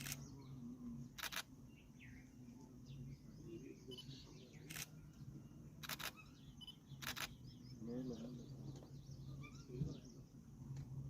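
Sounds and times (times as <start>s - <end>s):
camera shutter clicking: 0.0s - 0.2s, 1.2s - 1.5s, 5.8s - 6.2s, 7.0s - 7.4s
faint bird chirps: 0.0s - 10.4s
low steady hum: 0.0s - 11.0s.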